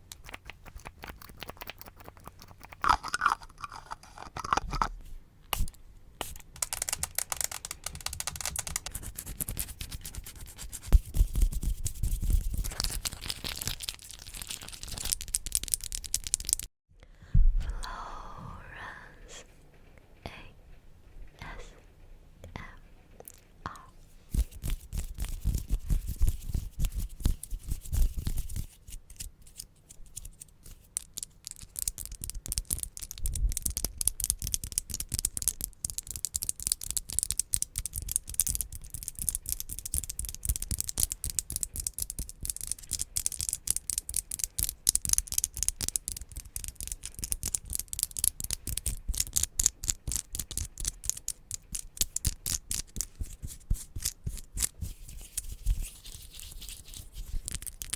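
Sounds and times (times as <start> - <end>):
crisp high clicks and scratches: 0.0 - 4.9, 5.6 - 16.7, 24.3 - 57.9.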